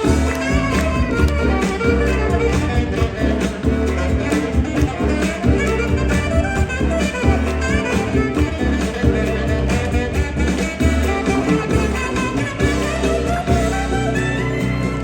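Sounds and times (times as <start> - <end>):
upbeat instrumental music: 0.0 - 15.0.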